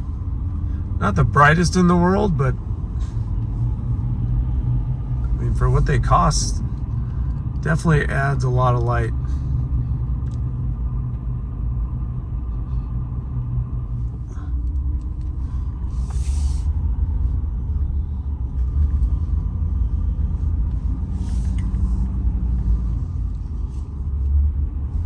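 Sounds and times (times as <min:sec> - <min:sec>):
truck engine idling: 0:00.0 - 0:10.3.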